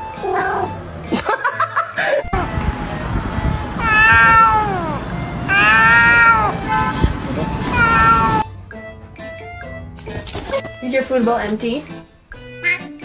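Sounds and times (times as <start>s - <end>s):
cat meowing: 0.2s - 0.7s, 3.8s - 8.5s.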